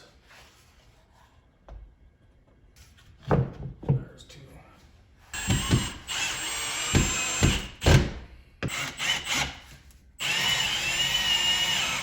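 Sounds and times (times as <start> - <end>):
power drill driving screws: 5.4 - 8.0, 8.6 - 12.0.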